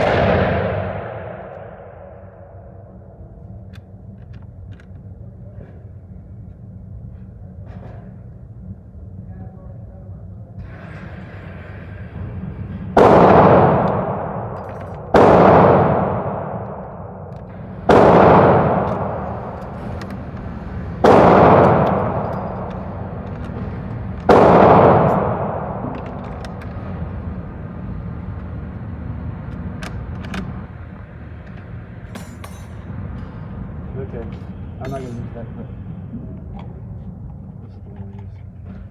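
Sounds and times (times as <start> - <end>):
rifle shots with echoing decay: 0.0 - 3.2, 12.8 - 27.4.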